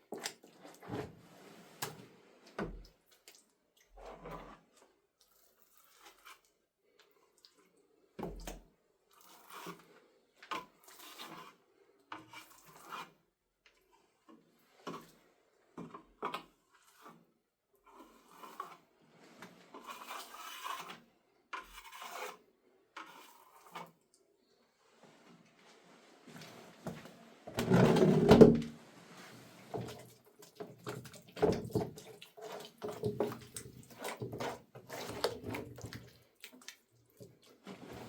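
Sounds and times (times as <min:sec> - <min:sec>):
rough scraping and rubbing: 0:21.6 - 0:22.4, 0:37.6 - 0:38.0.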